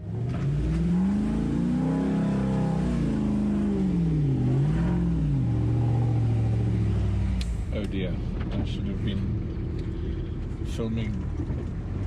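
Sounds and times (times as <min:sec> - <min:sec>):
engine revving: 0:00.0 - 0:12.0.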